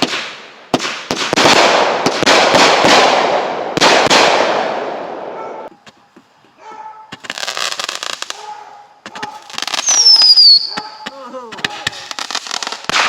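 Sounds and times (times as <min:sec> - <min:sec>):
firework sharp bangs: 0:00.0 - 0:13.0
crackling hiss: 0:05.7 - 0:13.0.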